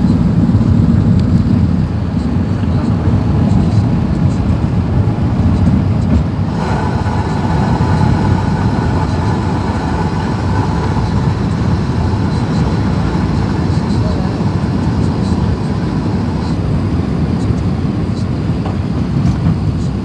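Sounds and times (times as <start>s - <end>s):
airplane cabin engine rumble: 0.0s - 20.0s
whining engine tone: 0.0s - 20.0s.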